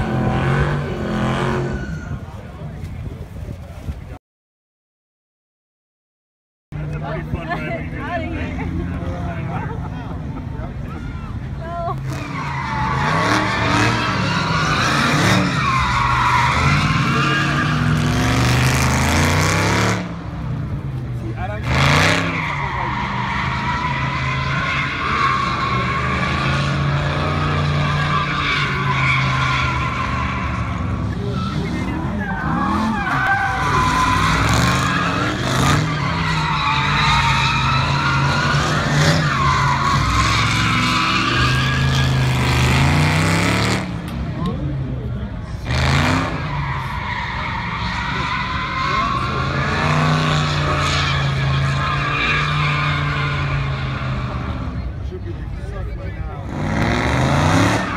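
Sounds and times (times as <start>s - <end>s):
car engine at high revs: 0.0s - 1.8s, 11.6s - 57.9s
tyres squealing: 12.0s - 19.6s, 21.6s - 43.5s, 45.7s - 54.7s.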